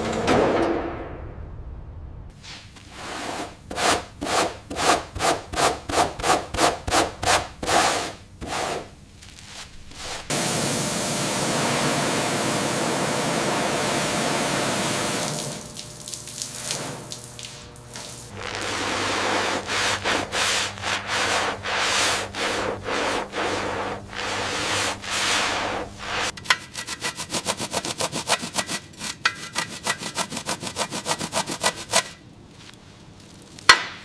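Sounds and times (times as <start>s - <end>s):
hand sanding strokes: 2.4s - 10.3s, 18.3s - 32.2s
steady hiss: 7.6s - 12.7s.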